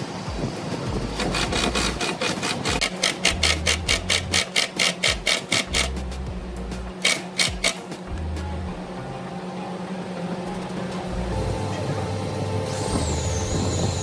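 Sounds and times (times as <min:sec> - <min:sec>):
hand tool scraping wood: 0:01.2 - 0:06.0.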